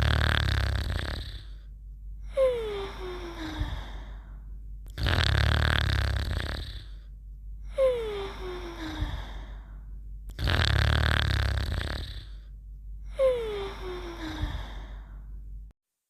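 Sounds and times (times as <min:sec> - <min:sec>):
rasping snore: 0:00.0 - 0:01.7, 0:04.9 - 0:07.1, 0:10.3 - 0:12.5.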